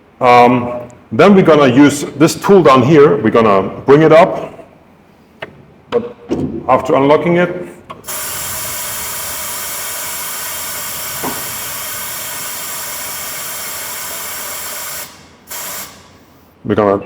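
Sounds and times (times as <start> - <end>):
compressed air hissing: 8.0 - 16.6.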